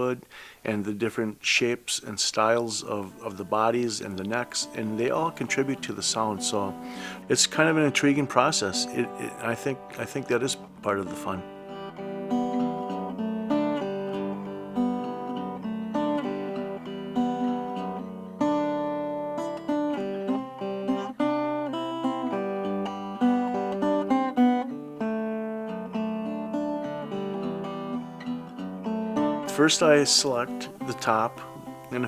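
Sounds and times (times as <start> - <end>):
acoustic guitar: 0.0 - 32.0.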